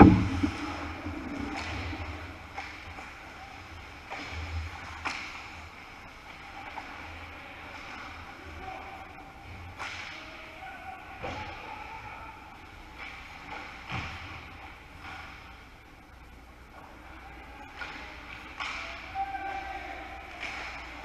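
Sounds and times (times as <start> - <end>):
hockey sticks and puck clacking: 1.6 - 8.2, 9.8 - 10.4, 17.6 - 21.0.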